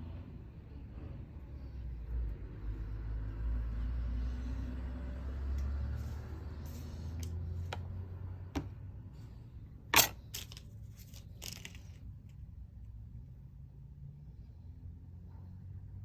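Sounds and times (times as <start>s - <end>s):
small tools clicking and tapping: 10.0s - 12.0s.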